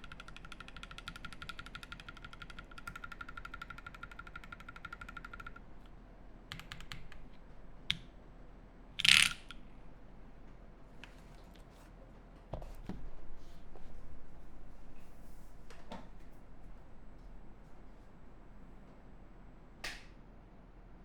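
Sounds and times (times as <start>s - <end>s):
spinning metal gadget clicking: 9.0s - 9.6s.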